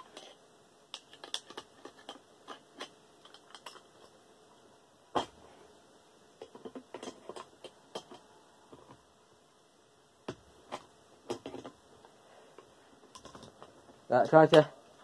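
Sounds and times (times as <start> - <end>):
tools and metal parts clicking: 0.0 - 4.2, 6.4 - 8.2, 13.0 - 14.7.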